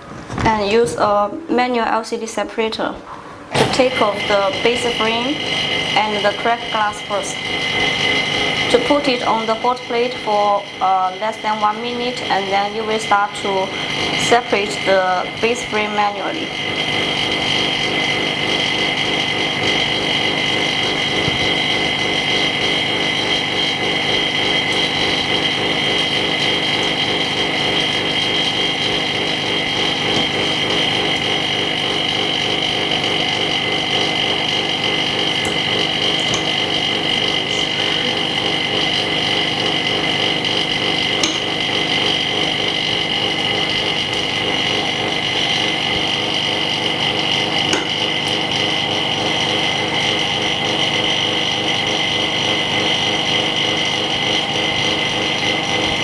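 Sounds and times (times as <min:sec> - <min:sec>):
small machine whining and pulsing: 0:03.3 - 0:56.0.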